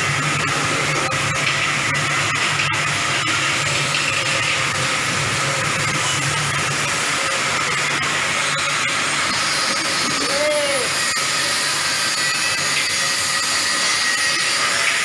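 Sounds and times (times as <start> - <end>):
arc welding hiss: 4.7 - 15.0.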